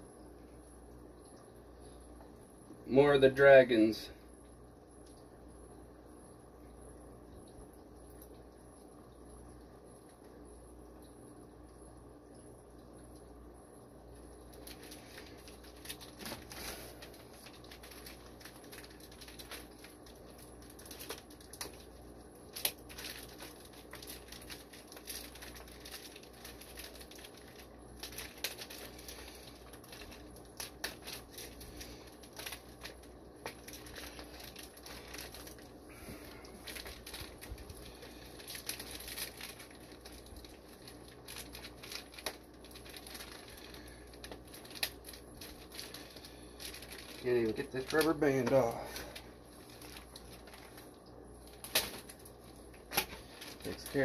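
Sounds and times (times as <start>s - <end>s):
plastic bags crinkling: 14.4s - 54.0s.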